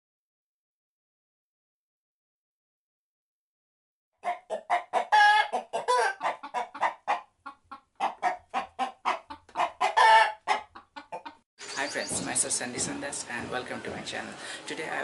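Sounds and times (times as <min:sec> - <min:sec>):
chicken clucking: 0:04.2 - 0:11.4
chicken squawking: 0:04.2 - 0:11.4.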